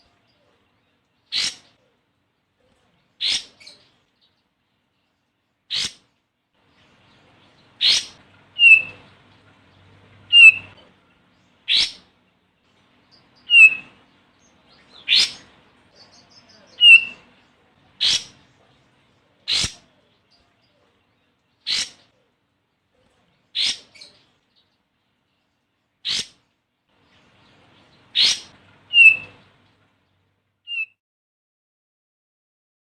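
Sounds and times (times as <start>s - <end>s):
bird short sharp notes: 7.8s - 9.0s, 10.3s - 10.8s
bird downward-slurred whistles: 8.6s - 9.0s, 10.3s - 10.7s, 13.5s - 13.9s, 16.8s - 17.2s, 28.2s - 29.3s, 30.7s - 30.9s.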